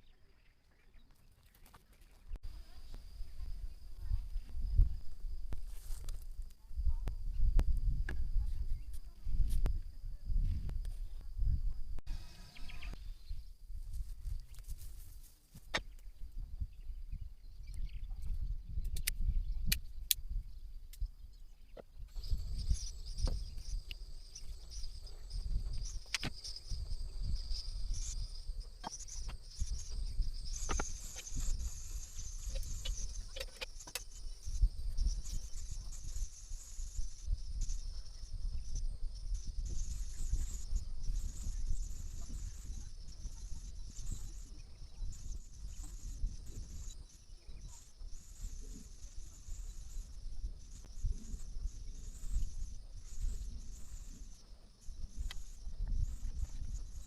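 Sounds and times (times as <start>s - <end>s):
constant high hiss: 0.0s - 57.0s
high insect chirring: 22.0s - 57.0s.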